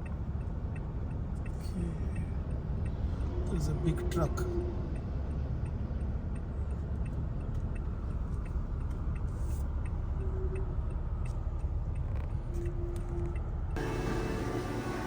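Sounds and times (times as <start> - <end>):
car engine and road noise: 0.0 - 15.0
faint regular ticking: 4.9 - 13.5.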